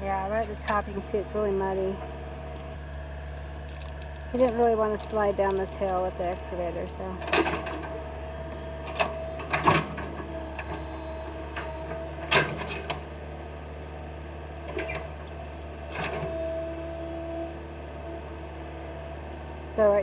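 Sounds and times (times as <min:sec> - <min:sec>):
excavator engine hum and whine: 0:00.0 - 0:20.0.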